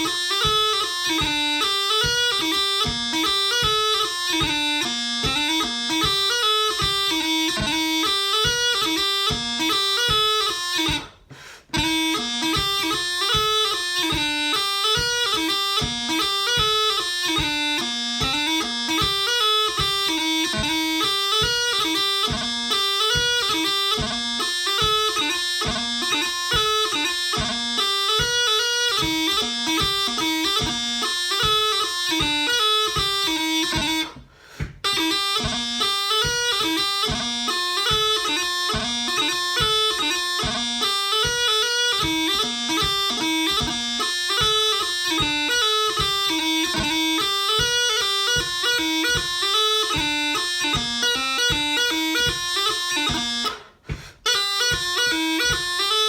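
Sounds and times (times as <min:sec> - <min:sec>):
bagpipe playing fast tune: 0:00.0 - 0:56.0.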